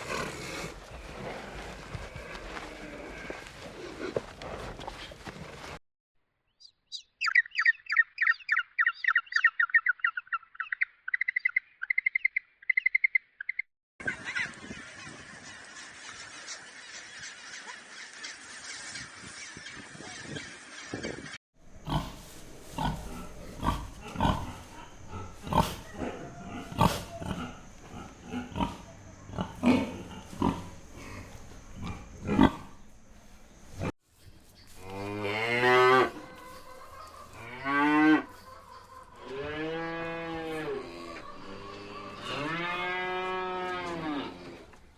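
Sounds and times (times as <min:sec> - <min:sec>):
high animal chirps: 0:06.6 - 0:13.6
animal hissing: 0:21.7 - 0:33.9.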